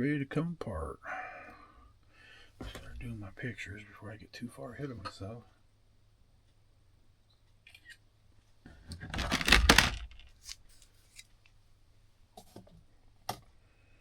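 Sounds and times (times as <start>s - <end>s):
rustling and scraping: 8.7s - 11.4s.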